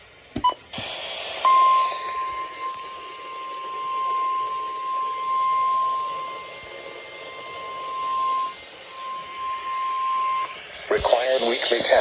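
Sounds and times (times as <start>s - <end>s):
steady high alarm tone: 0.4s - 12.0s
radio static hiss: 10.5s - 12.0s.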